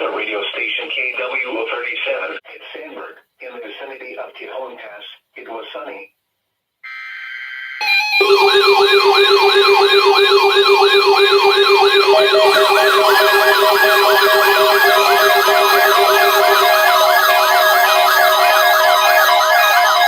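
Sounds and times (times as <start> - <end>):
electronic siren sweeps: 6.9 - 20.0.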